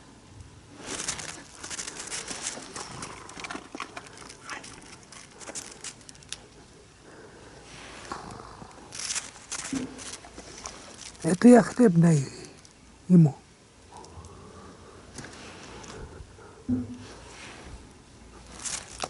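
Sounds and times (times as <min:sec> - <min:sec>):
dogs rustling and clicking: 0:00.8 - 0:06.6, 0:08.1 - 0:11.6, 0:18.4 - 0:19.0.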